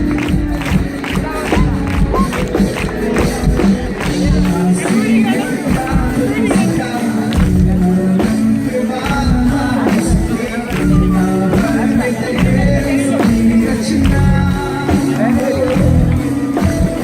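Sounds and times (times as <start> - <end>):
live band with singing: 0.0 - 17.0.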